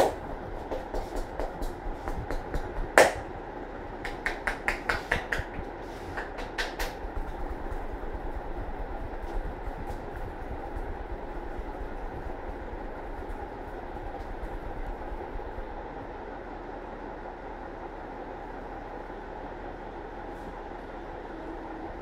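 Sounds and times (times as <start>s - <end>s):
hands slapping on head: 0.0s - 3.2s, 4.0s - 7.0s.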